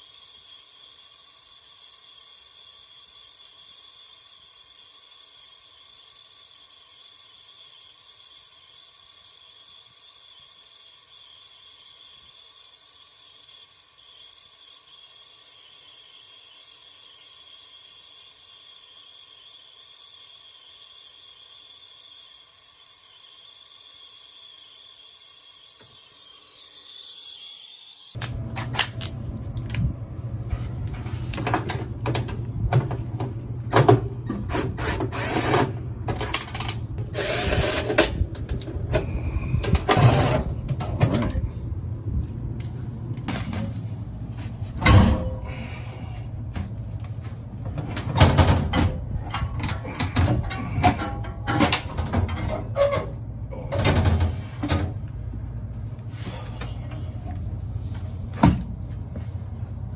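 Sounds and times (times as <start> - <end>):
steady low hum: 28.2 - 59.9.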